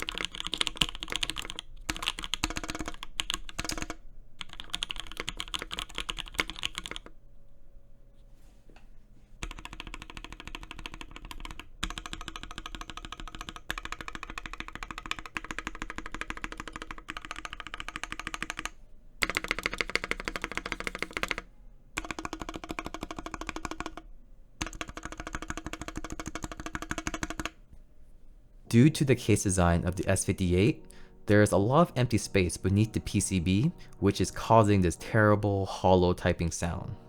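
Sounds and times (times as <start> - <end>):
fast typing on keyboard: 0.0 - 7.1, 9.4 - 27.6.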